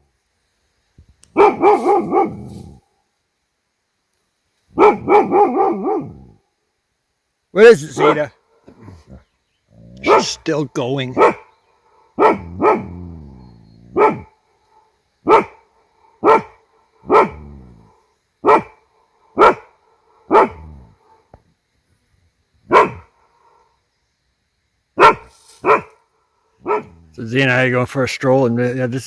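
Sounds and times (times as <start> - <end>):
bark echo: 1.3 - 2.5, 4.8 - 6.2, 7.8 - 8.3, 10.0 - 10.4, 11.1 - 11.5, 12.2 - 13.0, 13.9 - 14.3, 15.2 - 15.6, 16.2 - 17.5, 18.4 - 18.8, 19.4 - 21.2, 22.7 - 23.2, 25.0 - 26.0, 26.6 - 27.2
dog barking: 1.3 - 2.8, 4.8 - 6.3, 7.8 - 8.3, 9.9 - 10.4, 11.2 - 11.5, 12.2 - 13.1, 13.9 - 15.6, 16.2 - 17.7, 18.4 - 18.8, 19.4 - 21.2, 22.7 - 23.2, 25.0 - 26.0, 26.6 - 27.2.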